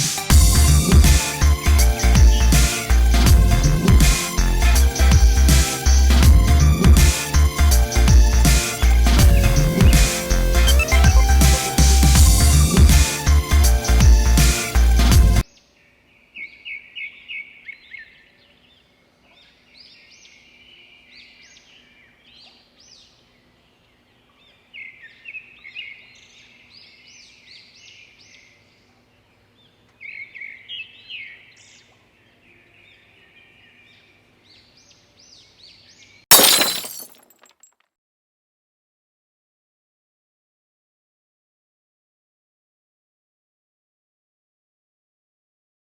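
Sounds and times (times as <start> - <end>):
songbird chirping: 0.6 - 14.8, 15.4 - 36.2.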